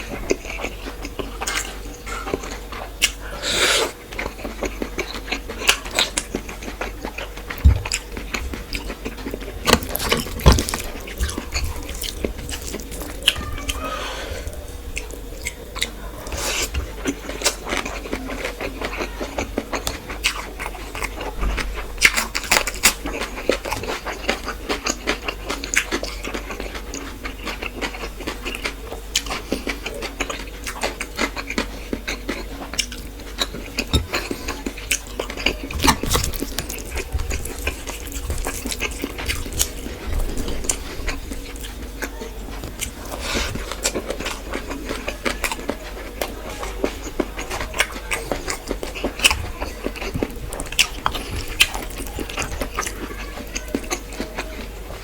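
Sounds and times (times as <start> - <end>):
chewing and wet mouth smacks: 0.2 - 3.2, 15.0 - 54.7.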